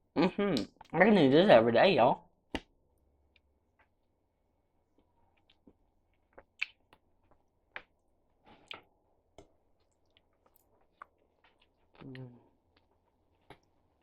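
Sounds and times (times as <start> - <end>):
person chewing: 4.8 - 14.0.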